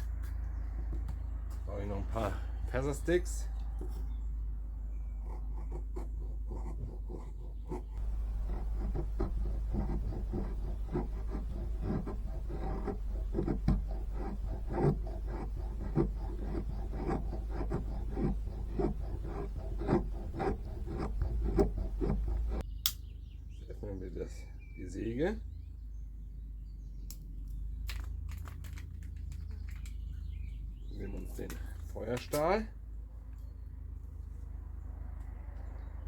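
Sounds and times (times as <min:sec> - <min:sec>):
knife scraping wood: 0:05.2 - 0:22.6.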